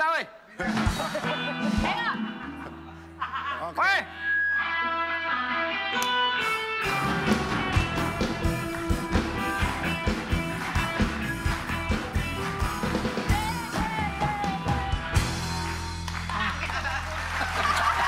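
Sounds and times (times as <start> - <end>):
drums steady beat: 0.6 - 2.4, 6.9 - 16.4
live band playing upbeat song: 0.6 - 3.1, 4.2 - 17.3
held guitar chords: 4.2 - 16.1.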